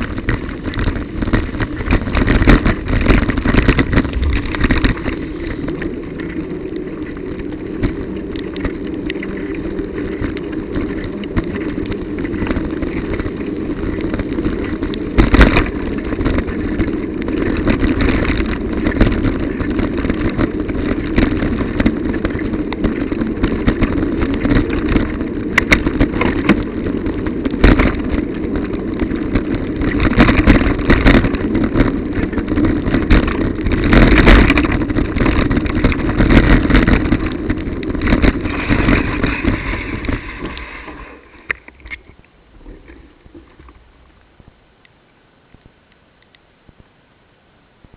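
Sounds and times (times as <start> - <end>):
bicycle riding on wet road: 0.0 - 47.9.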